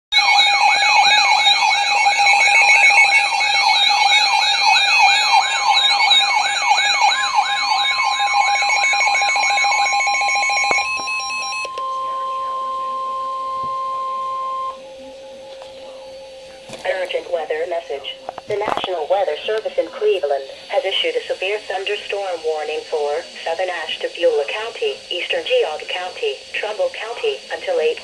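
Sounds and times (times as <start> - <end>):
electronic siren wailing: 0.1 - 18.9
steady alarm tones: 0.1 - 28.0
steady warning tone: 0.1 - 28.0.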